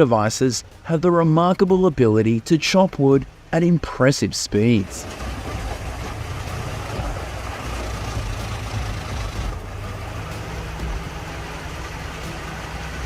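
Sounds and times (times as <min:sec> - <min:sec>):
wood chipping machine running: 0:05.0 - 0:13.0.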